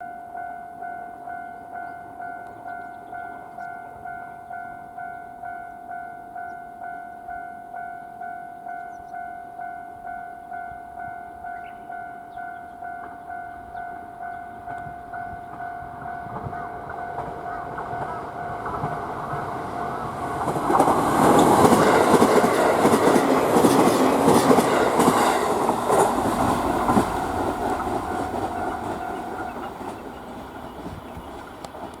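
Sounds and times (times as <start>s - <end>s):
level-crossing warning bell ringing: 0.0s - 31.0s
electric train passing: 0.3s - 32.0s
wheels clattering over rail joints: 15.4s - 32.0s.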